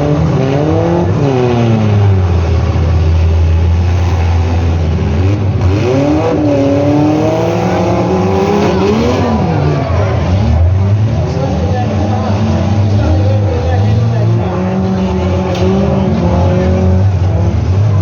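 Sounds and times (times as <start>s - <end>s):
car engines revving: 0.0s - 18.0s.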